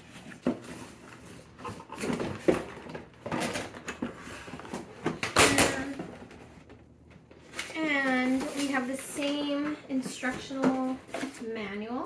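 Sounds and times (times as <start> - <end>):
packaging scraping and rustling: 0.0 - 5.2, 7.4 - 11.6.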